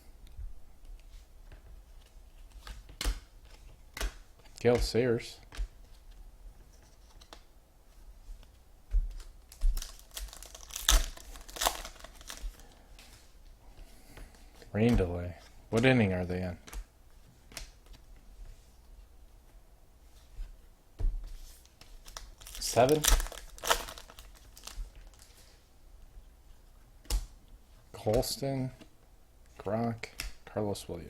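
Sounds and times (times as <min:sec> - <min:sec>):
cards rustling and clicking: 0:00.8 - 0:07.5, 0:09.1 - 0:18.6, 0:21.4 - 0:25.6
wrapper crinkling: 0:09.5 - 0:12.8, 0:22.0 - 0:25.4.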